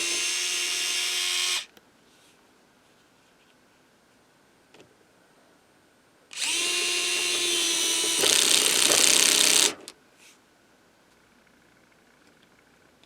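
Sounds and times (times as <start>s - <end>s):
cordless electric screwdriver running: 0.0s - 1.7s, 6.4s - 9.9s.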